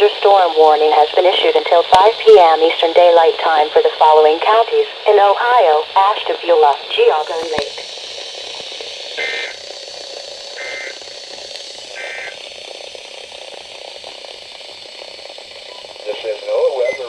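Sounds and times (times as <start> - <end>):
radio static: 0.0 - 17.0
two-tone digital data bursts: 9.0 - 9.6, 10.5 - 11.2, 11.9 - 12.4, 15.6 - 17.0.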